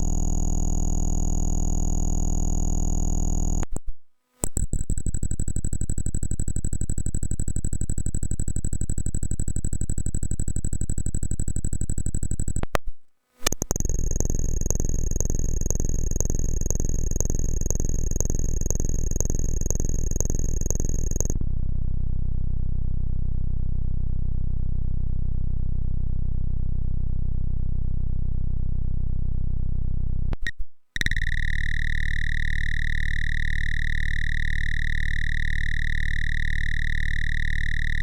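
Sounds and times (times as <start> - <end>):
buzzy electronic tones: 0.0 - 3.8, 13.5 - 21.4, 30.4 - 38.0.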